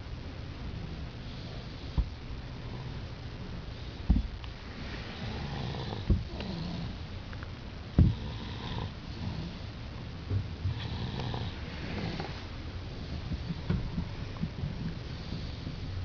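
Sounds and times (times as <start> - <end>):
child snoring: 4.9 - 7.0, 8.0 - 9.7, 10.7 - 12.5.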